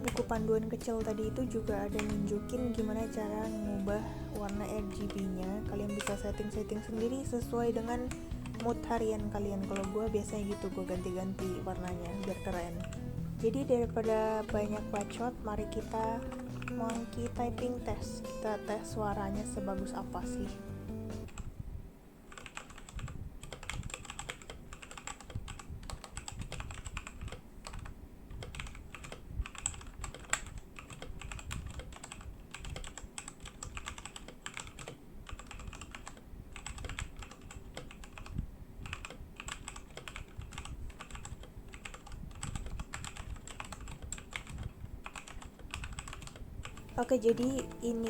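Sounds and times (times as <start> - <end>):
fast mechanical keyboard typing: 0.0 - 20.5, 21.2 - 21.5, 22.3 - 48.0.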